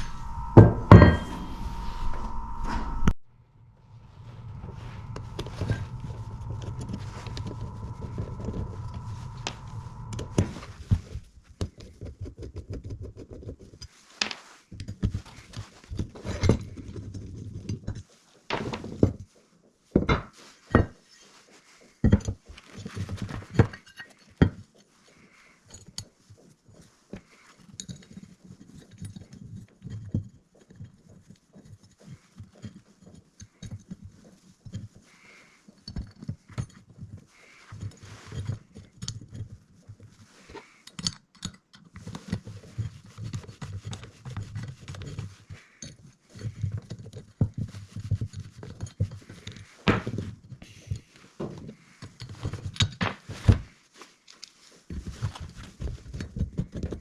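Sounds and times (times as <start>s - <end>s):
steady hum: 0.0s - 11.2s.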